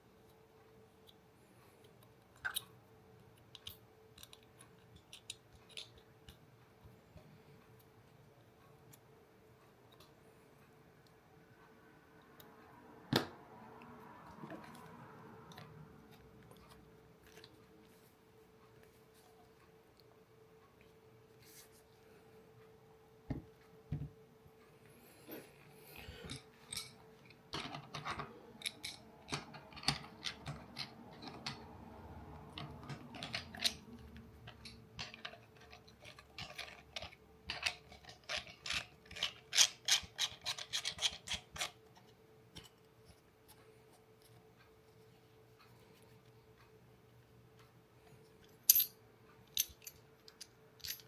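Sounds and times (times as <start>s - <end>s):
small clicks and rubbing: 1.0s - 7.9s, 14.3s - 20.1s, 26.2s - 46.8s, 47.6s - 51.0s.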